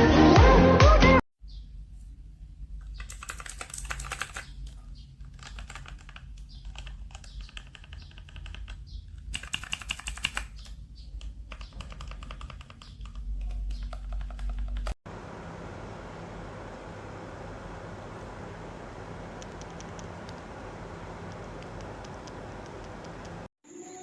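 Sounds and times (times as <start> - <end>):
mechanical keyboard key clicks: 5.4 - 14.9.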